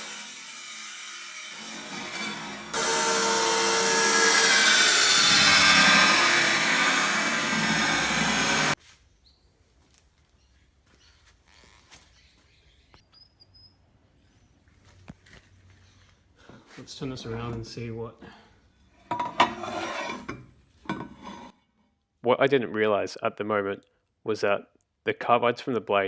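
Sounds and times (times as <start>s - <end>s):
table saw cutting metal plate: 0.0s - 8.8s, 19.1s - 21.5s.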